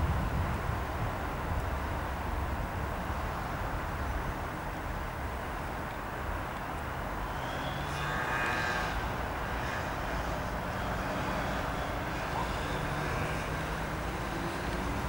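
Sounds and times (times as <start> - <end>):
faint engine whine: 0.0 - 15.0
turboprop engines droning: 6.8 - 15.0.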